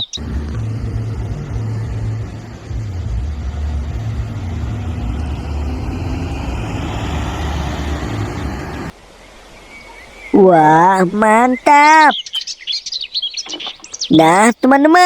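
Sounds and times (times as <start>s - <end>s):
low motor rumble: 0.0s - 9.0s.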